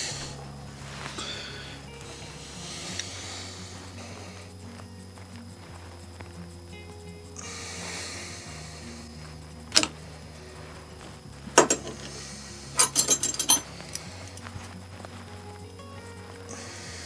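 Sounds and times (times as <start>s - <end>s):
quiet background music: 0.0s - 17.0s
metallic clinks of tools: 11.5s - 16.8s.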